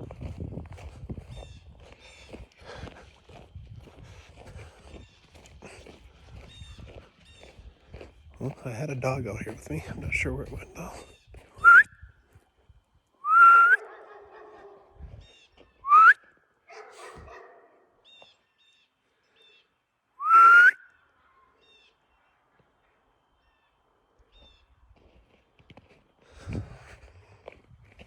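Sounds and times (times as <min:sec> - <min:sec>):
person whistling rising in pitch: 0:11.6 - 0:12.0, 0:13.2 - 0:13.8, 0:15.8 - 0:16.2, 0:20.2 - 0:20.8.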